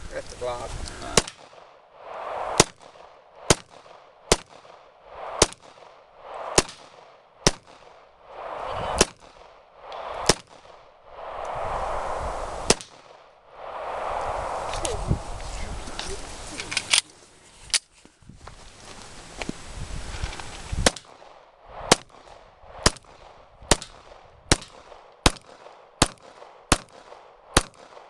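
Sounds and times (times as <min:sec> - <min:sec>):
pistol shots cracking: 0:01.2 - 0:01.8, 0:02.6 - 0:08.1, 0:10.2 - 0:10.9, 0:20.8 - 0:28.0.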